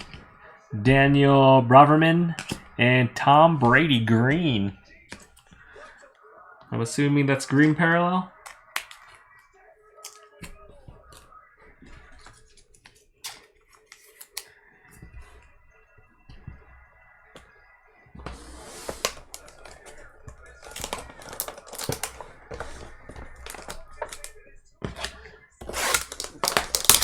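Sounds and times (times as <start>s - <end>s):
packaging rustling and crinkling: 18.3s - 27.0s.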